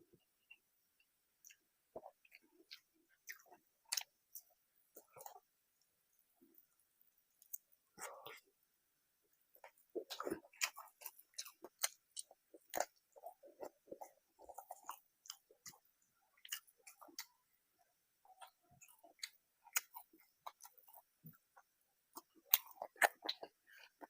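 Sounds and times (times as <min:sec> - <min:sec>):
close chewing mouth sounds: 0:01.4 - 0:05.5, 0:09.5 - 0:24.0.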